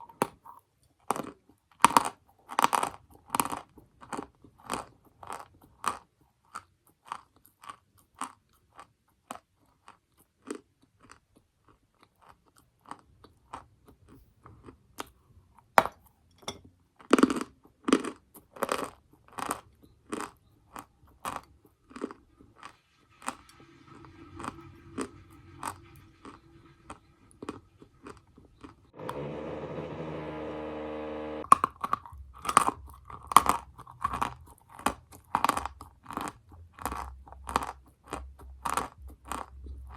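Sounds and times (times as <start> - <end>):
crunchy biting and chewing: 0.1 - 15.2, 17.0 - 23.5, 24.4 - 29.0, 31.4 - 39.9
mechanical whine: 29.0 - 31.5.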